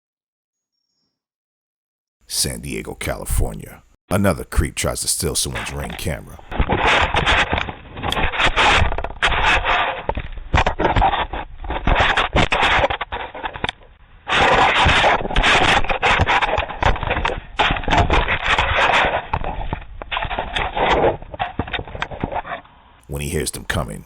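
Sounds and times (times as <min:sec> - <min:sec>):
handling noise on microphone: 0:04.6 - 0:09.6.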